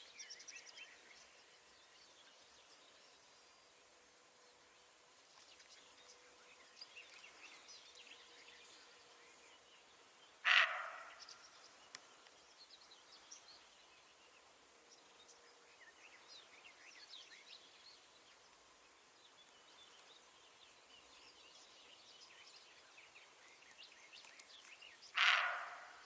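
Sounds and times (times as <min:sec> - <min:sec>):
faint birds chirping: 0:00.0 - 0:26.0
deer call: 0:10.4 - 0:11.2, 0:25.2 - 0:26.0.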